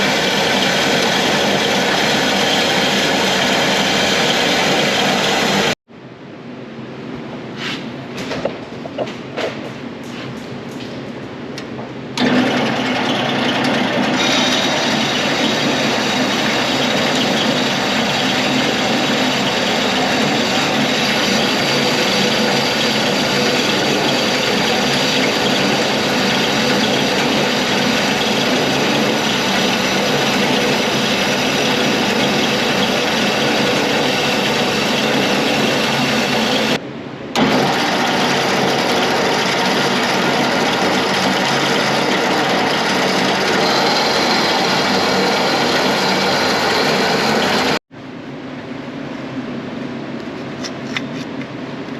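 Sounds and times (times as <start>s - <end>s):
power tool running: 0.0s - 5.8s, 12.2s - 47.8s.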